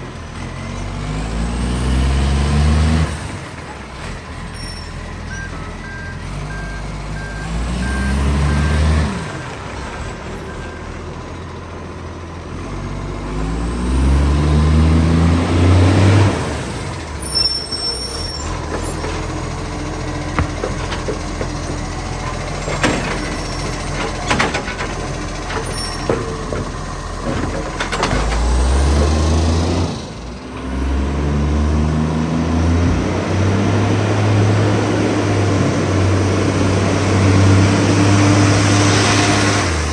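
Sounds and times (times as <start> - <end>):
diesel truck revving: 0.0 - 39.9
reversing alarm beeping: 4.6 - 9.5
sharp clanks: 18.2 - 29.2.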